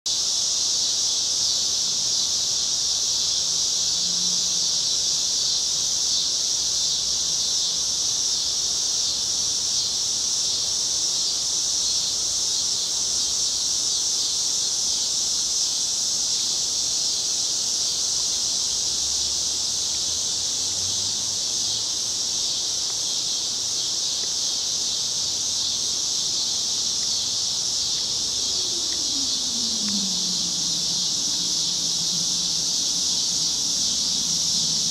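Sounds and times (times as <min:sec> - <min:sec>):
cicadas buzzing: 0:00.1 - 0:34.9
faint low falling tone: 0:28.2 - 0:34.9.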